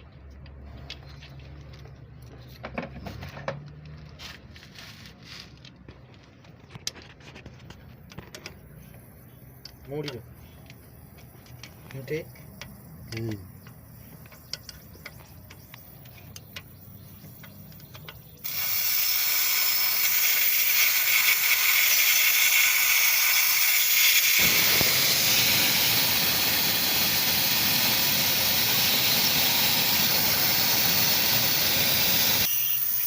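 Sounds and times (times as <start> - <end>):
pressurised gas hissing: 18.4 - 33.0.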